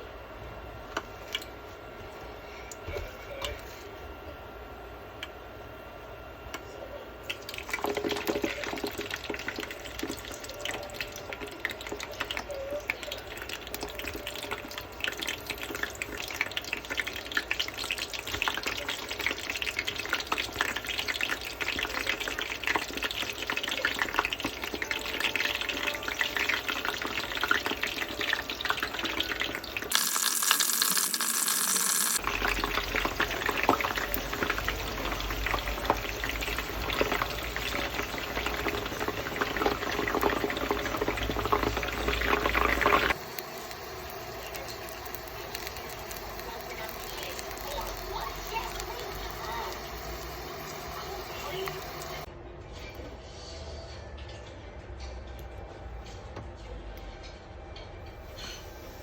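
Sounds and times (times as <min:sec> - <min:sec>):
food sizzling in a frying pan: 0:07.4 - 0:52.3.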